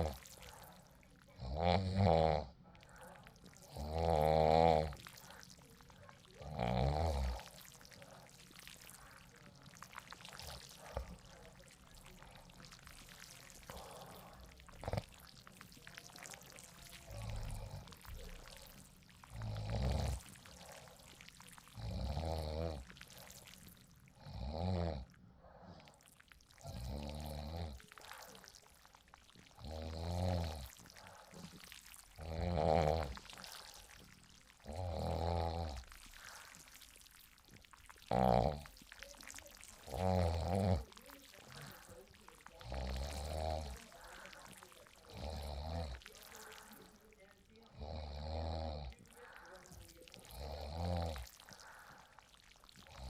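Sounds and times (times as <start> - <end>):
rain-like hiss: 0.0 - 1.7, 2.7 - 25.1, 25.7 - 53.0
person snoring: 0.0 - 53.0.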